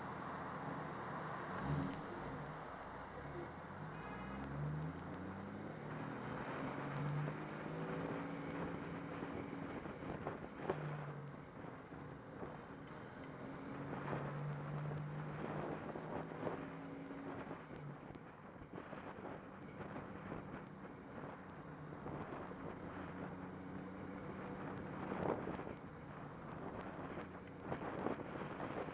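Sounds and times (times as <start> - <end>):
wind and road noise: 0.0 - 28.9
car engine revving: 0.6 - 11.7.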